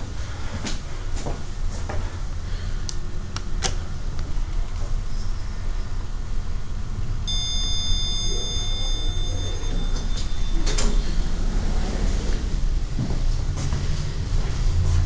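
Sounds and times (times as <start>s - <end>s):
low rumble: 2.2s - 15.0s
lift button beep: 7.3s - 11.3s.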